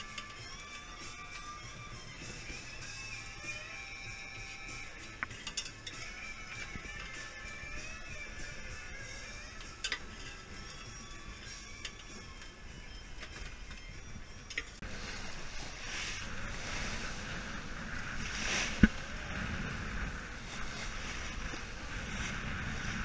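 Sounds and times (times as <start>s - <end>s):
wind and water rushing: 14.8s - 23.0s.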